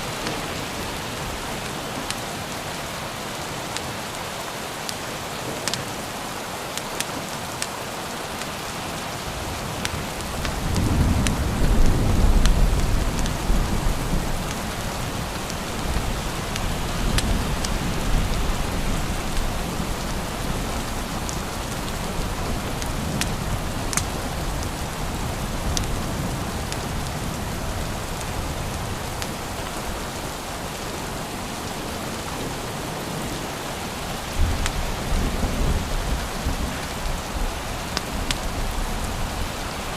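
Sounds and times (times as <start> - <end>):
steady rain: 0.0 - 39.9
thunder rumbling: 9.4 - 30.0, 34.2 - 39.9.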